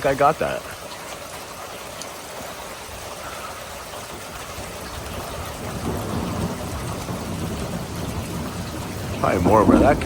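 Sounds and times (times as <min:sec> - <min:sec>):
steady rain: 0:00.0 - 0:10.0
thunder rumbling: 0:05.6 - 0:10.0.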